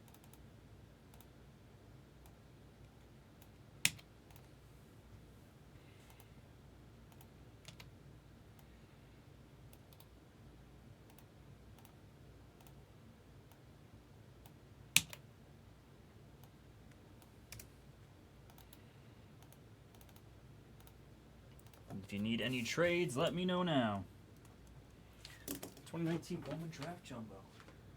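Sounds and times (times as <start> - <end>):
keyboard and mouse clicks: 0.0 - 0.4, 3.4 - 4.5, 7.1 - 7.9, 11.1 - 12.0, 15.0 - 15.2, 18.5 - 18.8, 19.4 - 22.0.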